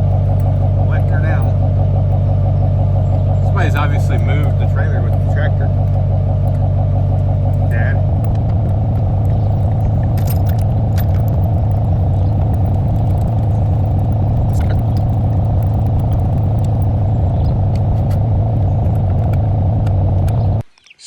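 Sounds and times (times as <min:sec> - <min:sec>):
vehicle engine idling: 0:00.0 - 0:20.6
metallic clinks and rattles: 0:07.5 - 0:18.1.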